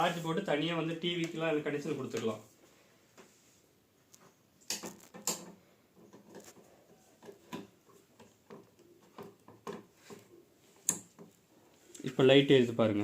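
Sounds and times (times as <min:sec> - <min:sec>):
objects clicking and knocking: 0:04.6 - 0:11.4.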